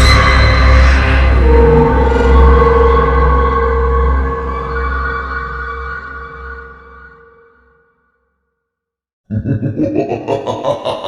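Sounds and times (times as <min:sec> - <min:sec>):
eerie drone over deep rumble: 0:00.0 - 0:07.3.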